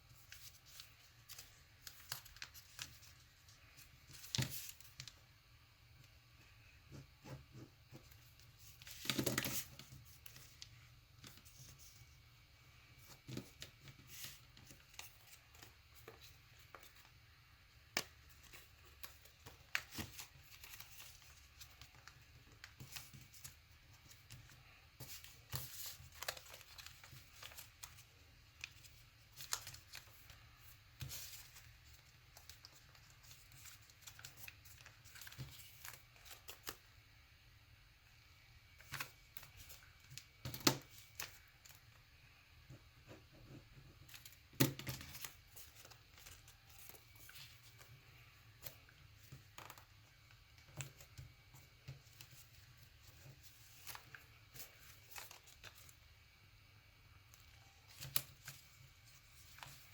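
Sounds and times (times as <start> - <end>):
paper being folded and creased: 0.1 - 5.1, 7.2 - 12.1, 13.0 - 17.1, 17.9 - 36.8, 44.0 - 56.0, 57.3 - 59.9.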